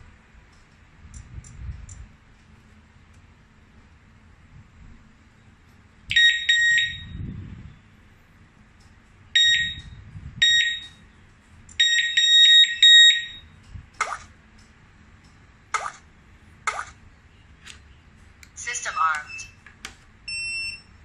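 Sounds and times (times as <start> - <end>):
high electronic beeps: 18.8 - 19.6.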